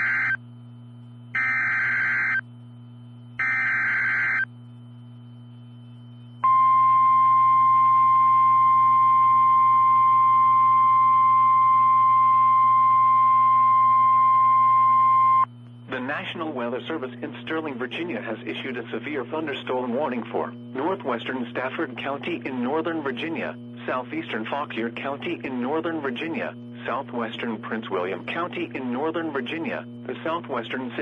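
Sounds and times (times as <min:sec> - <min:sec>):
low hum: 0:00.0 - 0:31.0
steady attention tone: 0:00.0 - 0:31.0
buzzy warbling data bursts: 0:01.4 - 0:02.4, 0:03.4 - 0:04.4.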